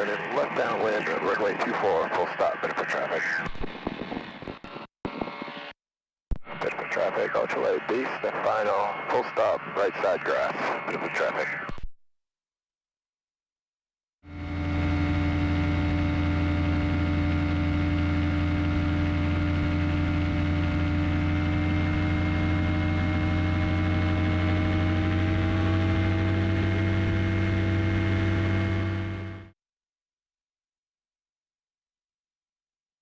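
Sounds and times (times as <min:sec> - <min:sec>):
ultralight engine droning: 0:14.3 - 0:29.5.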